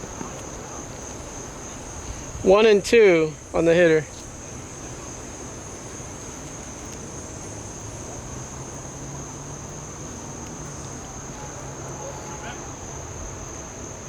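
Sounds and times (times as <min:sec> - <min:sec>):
faint outdoor background noise: 0:00.0 - 0:14.0
insects trilling: 0:00.0 - 0:14.0.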